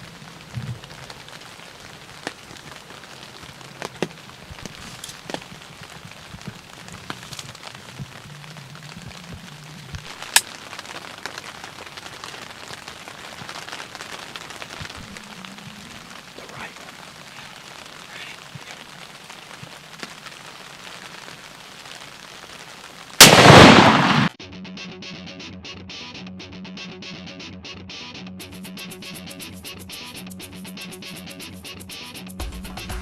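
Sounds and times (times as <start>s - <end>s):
rain pattering on a hunting blind: 0.0s - 24.4s
muzzleloader gunshot: 23.2s - 24.3s
guitar music: 24.4s - 32.0s.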